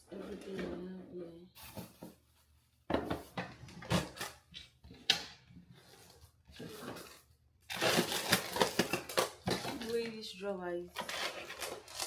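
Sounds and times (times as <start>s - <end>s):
items clattering in a drawer: 2.9s - 10.3s.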